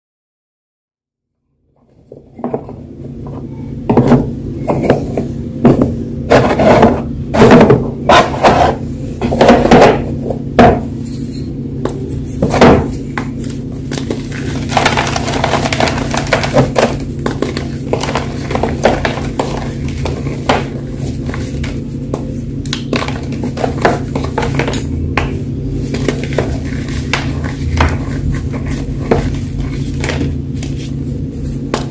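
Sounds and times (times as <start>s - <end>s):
chalk blocks crunching: 6.3s - 10.0s, 12.4s - 31.9s.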